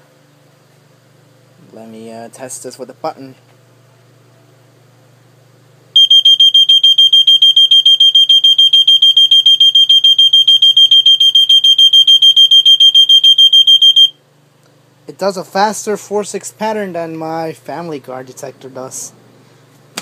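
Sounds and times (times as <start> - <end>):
smoke alarm rapid high beeps: 6.0 - 14.2.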